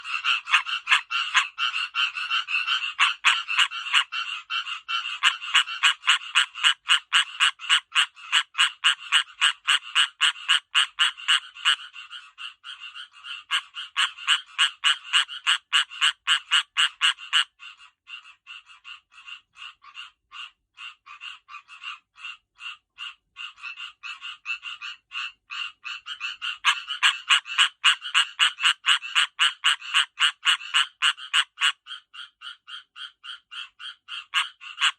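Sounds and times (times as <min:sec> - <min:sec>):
tree frogs calling in chorus: 0:00.0 - 0:34.9.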